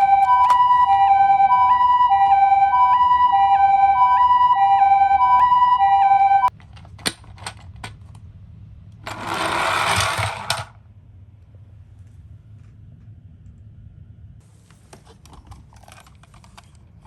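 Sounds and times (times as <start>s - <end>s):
toy electronic two-tone siren: 0.0s - 6.5s
toy car plastic rattle: 9.0s - 10.8s, 15.0s - 17.0s.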